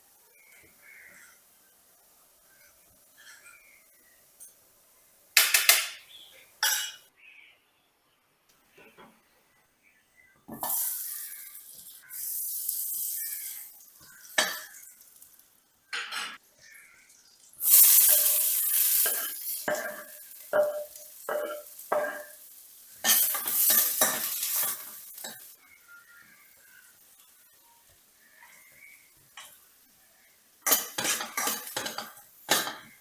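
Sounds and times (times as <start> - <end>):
metal spoon clinking against pan: 6.6 - 7.1, 18.1 - 25.5, 30.6 - 33.0
food sizzling in hot oil: 10.5 - 33.0.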